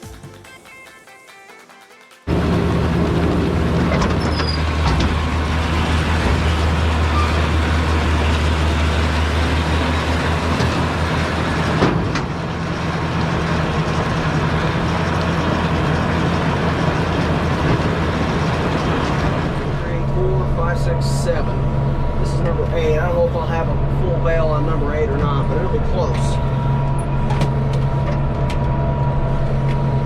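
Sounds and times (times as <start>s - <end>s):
diesel tractor engine under load: 2.3s - 30.0s.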